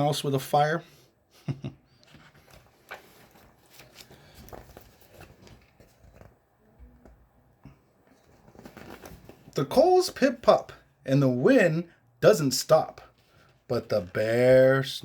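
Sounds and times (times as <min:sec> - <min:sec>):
book pages rustling: 0:02.0 - 0:09.8.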